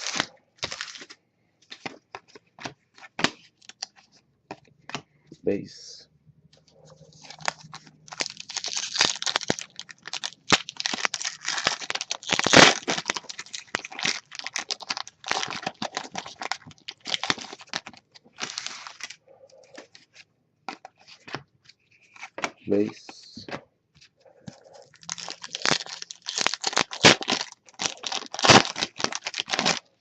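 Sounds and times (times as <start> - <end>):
foil wrapper tearing and crinkling: 0.0 - 1.1, 7.2 - 19.2, 24.9 - 29.9.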